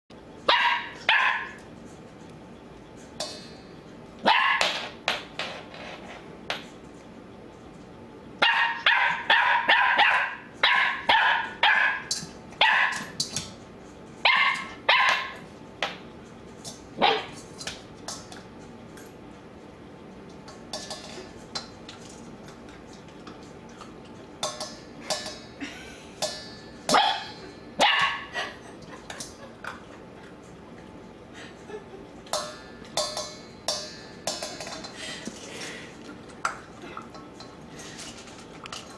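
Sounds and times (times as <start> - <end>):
dog barking: 0.5 - 1.6, 4.2 - 4.7, 8.4 - 13.1, 14.2 - 15.4, 17.0 - 17.4, 26.9 - 28.3.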